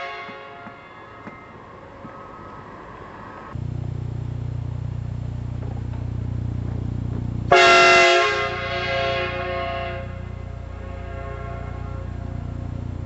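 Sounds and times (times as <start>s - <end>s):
train air horn chord: 0.0s - 1.2s, 7.5s - 13.0s
low steady hum: 3.5s - 13.0s.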